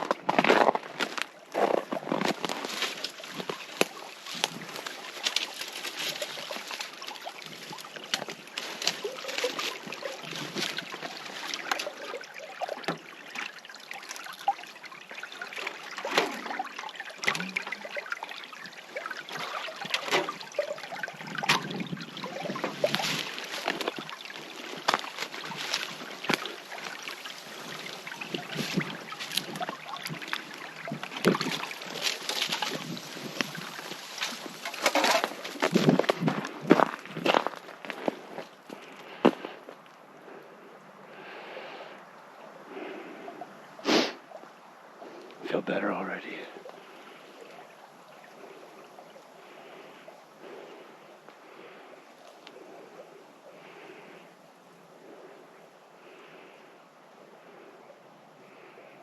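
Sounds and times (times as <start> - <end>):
footsteps crunching through snow: 0.0 - 11.9, 22.3 - 38.5.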